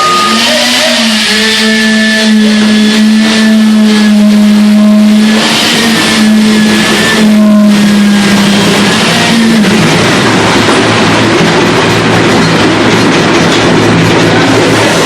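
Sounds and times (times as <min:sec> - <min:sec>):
electric concrete vibrator humming: 0:00.0 - 0:15.0.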